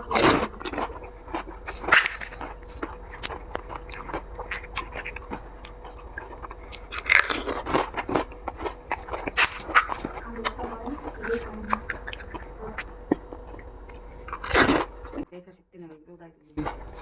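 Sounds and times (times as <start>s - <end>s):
crisp shells crunching: 0.0s - 15.2s.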